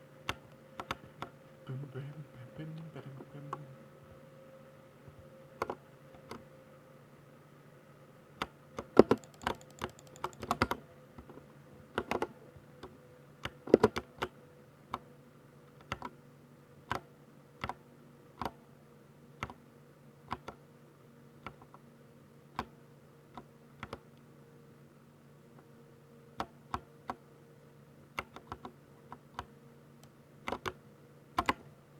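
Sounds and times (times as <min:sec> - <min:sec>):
mechanical keyboard keystrokes: 0:08.4 - 0:10.8, 0:13.4 - 0:15.0, 0:15.8 - 0:16.2, 0:30.4 - 0:30.8, 0:31.4 - 0:31.6.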